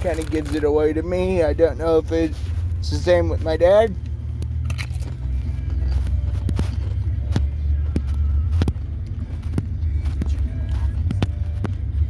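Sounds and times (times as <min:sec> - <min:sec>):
chip bag crinkling: 0:00.0 - 0:00.6
car interior rumble: 0:00.0 - 0:12.0
chips being eaten: 0:04.4 - 0:05.4.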